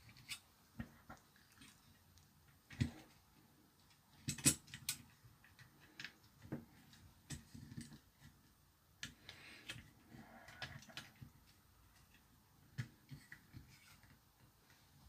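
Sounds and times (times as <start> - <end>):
small tools clicking and tapping: 3.8 - 8.4.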